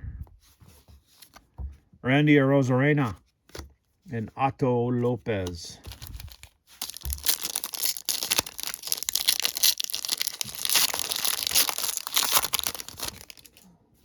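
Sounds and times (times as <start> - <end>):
foil wrapper tearing and crinkling: 5.8 - 13.6.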